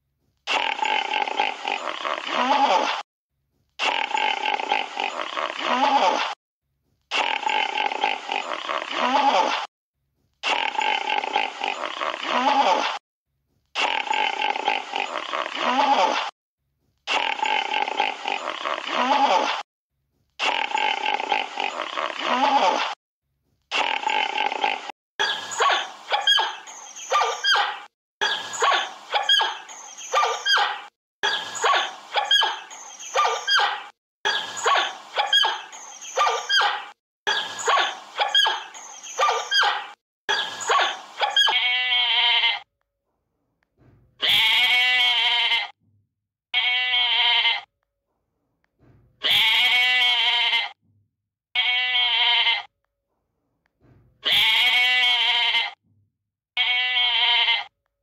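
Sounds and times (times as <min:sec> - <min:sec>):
animal's rapid high calls: 0:25.2 - 0:42.5
goat bleating: 0:34.3 - 0:42.6, 0:44.2 - 0:45.7, 0:46.6 - 0:47.7, 0:49.2 - 0:50.8, 0:51.6 - 0:52.7, 0:54.2 - 0:55.8, 0:56.6 - 0:57.7.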